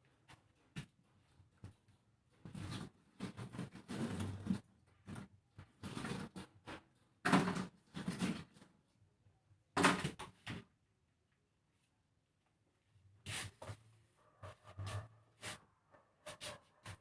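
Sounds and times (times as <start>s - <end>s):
refrigerator parts scraping and knocking: 2.3s - 8.8s.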